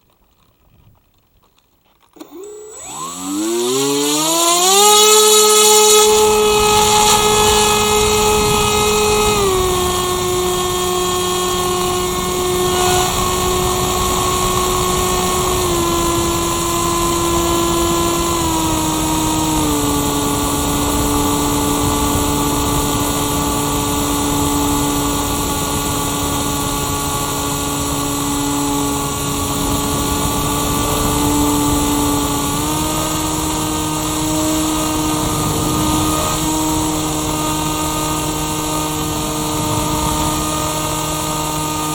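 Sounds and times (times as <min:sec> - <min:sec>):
glider motor and propeller whine: 0:02.2 - 0:41.9.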